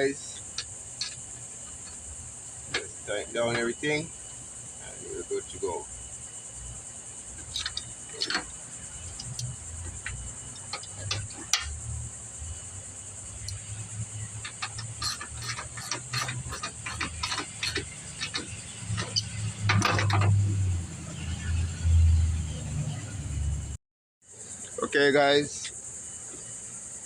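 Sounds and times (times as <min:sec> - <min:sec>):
crickets chirring: 0:00.0 - 0:27.0
hand tools clicking and clinking: 0:07.4 - 0:08.5, 0:09.1 - 0:11.8, 0:14.3 - 0:20.4
low handling rumble: 0:16.4 - 0:23.8.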